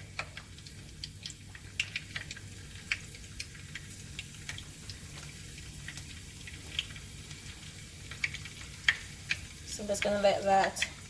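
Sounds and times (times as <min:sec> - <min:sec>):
garlic frying in oil: 0:00.0 - 0:11.0
oil crackles and pops: 0:00.0 - 0:11.0.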